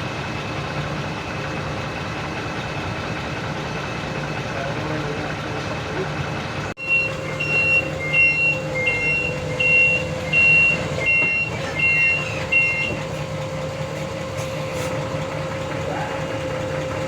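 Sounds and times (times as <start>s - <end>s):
engine hum: 0.0s - 17.0s
vehicle reversing alarm beeping: 6.8s - 17.0s.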